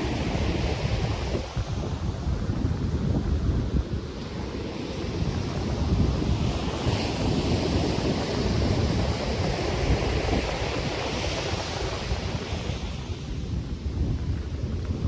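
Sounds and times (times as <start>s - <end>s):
wind rumble on microphone: 0.0s - 15.0s
wind rustling palm fronds: 0.0s - 15.0s
ocean surf breaking: 4.2s - 15.0s.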